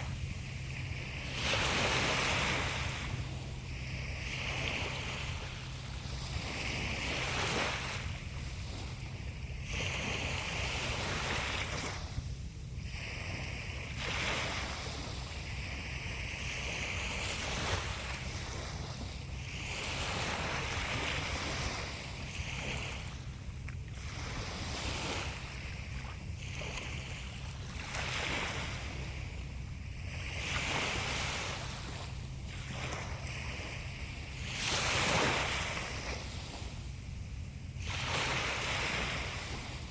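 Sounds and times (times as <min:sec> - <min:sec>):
steady low rumble: 0:00.0 - 0:39.9.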